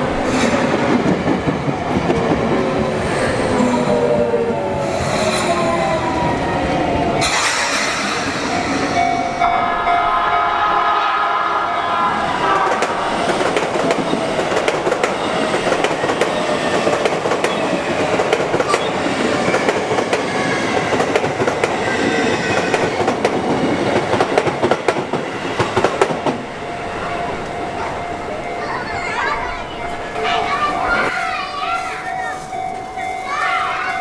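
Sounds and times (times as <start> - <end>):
train wheels clacking: 0.0 - 6.4, 7.2 - 34.0
train horn: 9.4 - 13.6.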